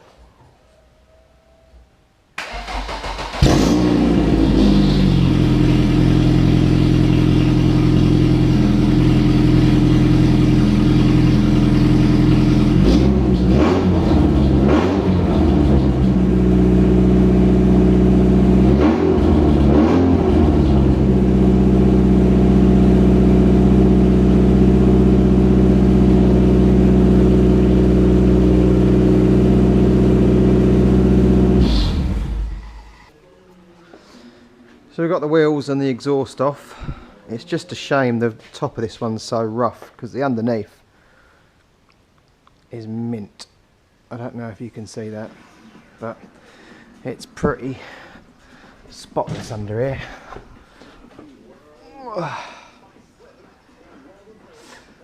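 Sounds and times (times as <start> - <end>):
car engine idling and revving: 2.6 - 33.0.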